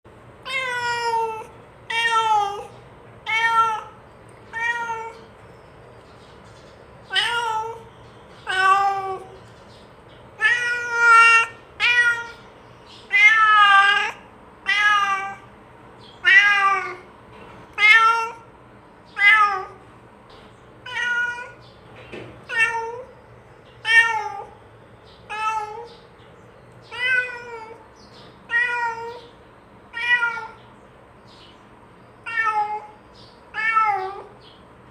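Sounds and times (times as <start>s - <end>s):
cat meowing: 0.4s - 5.3s, 7.1s - 9.4s, 10.4s - 12.5s, 13.1s - 15.5s, 16.2s - 17.1s, 17.8s - 18.5s, 19.1s - 19.8s, 20.8s - 21.6s, 22.4s - 23.1s, 23.8s - 24.6s, 25.3s - 26.0s, 26.9s - 27.8s, 28.5s - 30.6s, 32.2s - 34.4s.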